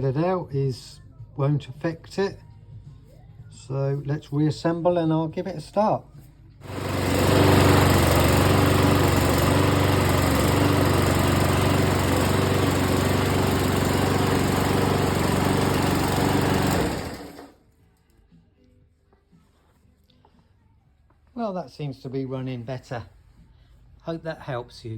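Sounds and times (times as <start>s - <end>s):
lawnmower engine running: 6.6s - 17.6s.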